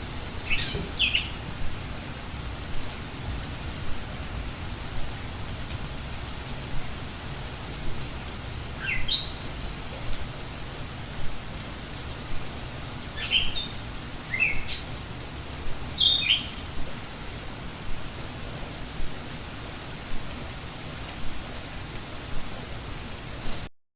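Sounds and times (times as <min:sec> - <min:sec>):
bird chirping: 0:00.0 - 0:01.7
steady rain falling: 0:00.0 - 0:23.7.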